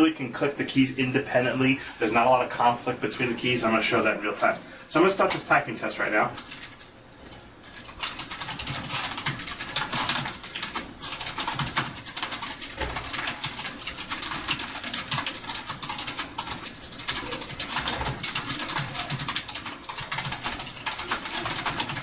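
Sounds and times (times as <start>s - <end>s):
fast keyboard typing: 0.4s - 6.9s, 7.7s - 22.0s.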